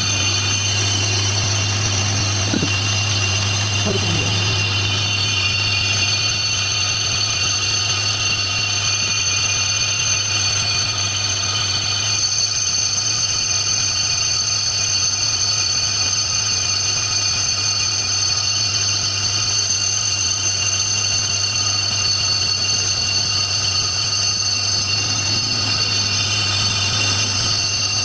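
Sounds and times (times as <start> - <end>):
lathe motor hum: 0.0 - 12.2, 21.4 - 28.0
high ringing cutting tones: 0.0 - 28.0.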